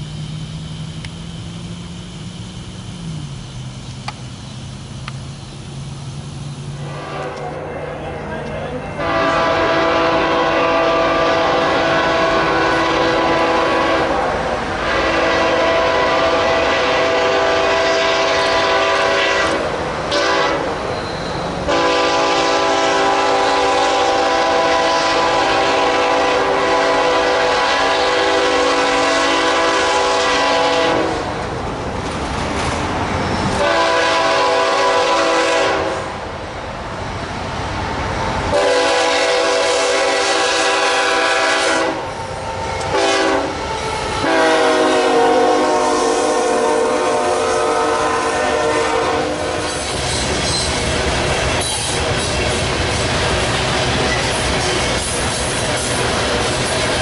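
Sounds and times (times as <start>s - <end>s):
train rumbling on rails: 0.0s - 57.0s
locomotive horn blasts: 6.8s - 20.8s, 21.7s - 31.3s, 33.6s - 36.2s, 38.5s - 49.9s.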